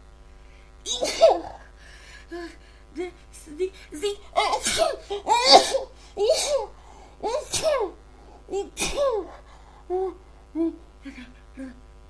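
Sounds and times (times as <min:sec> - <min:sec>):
woman sneezing: 0:00.9 - 0:01.6, 0:04.3 - 0:06.7, 0:07.3 - 0:08.0, 0:08.6 - 0:09.4.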